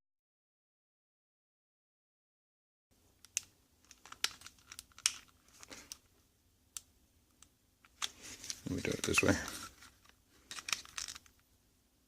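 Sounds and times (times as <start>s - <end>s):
plastic parts clicking and scraping: 3.2s - 6.1s, 7.8s - 11.4s.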